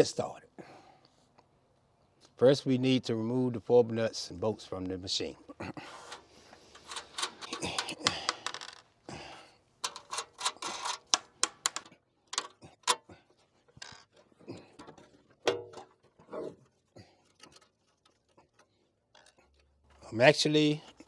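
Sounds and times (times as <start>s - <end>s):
metal scraping: 5.8s - 8.8s, 9.8s - 11.8s
metallic clicks and clinks: 6.1s - 8.8s, 9.8s - 13.0s.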